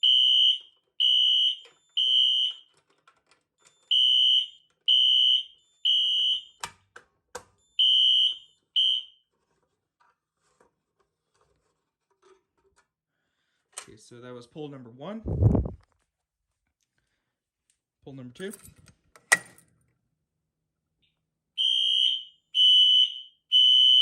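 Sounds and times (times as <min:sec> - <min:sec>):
fire alarm beeping: 0:00.0 - 0:02.8, 0:03.6 - 0:06.7, 0:07.6 - 0:09.3, 0:21.6 - 0:24.0.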